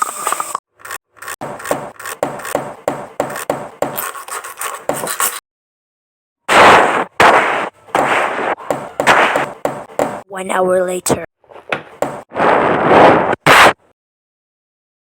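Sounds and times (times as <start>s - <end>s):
rapid scraping strokes: 0.0s - 5.4s, 6.5s - 10.2s.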